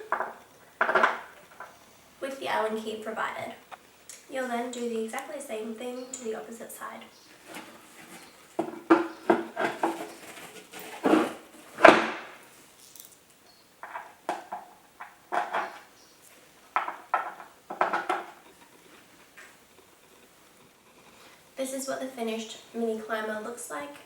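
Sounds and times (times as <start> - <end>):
wooden parts clacking: 0.0 - 1.8, 7.4 - 16.0, 16.7 - 20.3.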